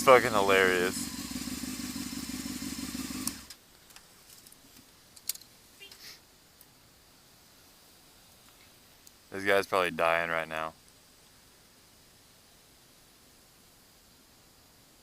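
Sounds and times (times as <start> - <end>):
motorcycle engine idling: 0.0 - 3.5
faint clicks: 8.3 - 9.2.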